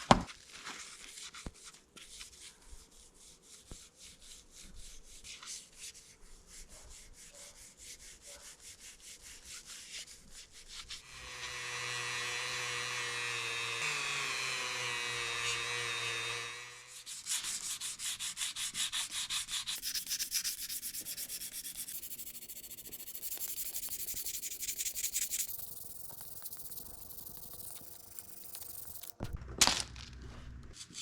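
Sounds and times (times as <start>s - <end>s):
sanding rubbing strokes: 2.9s - 11.4s, 16.8s - 29.2s
sander humming: 11.0s - 17.0s, 19.8s - 29.4s.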